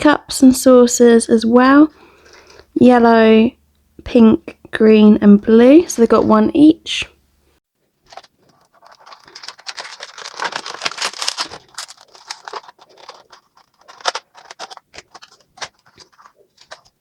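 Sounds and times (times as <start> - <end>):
packaging crackling and rustling: 7.8 - 17.0.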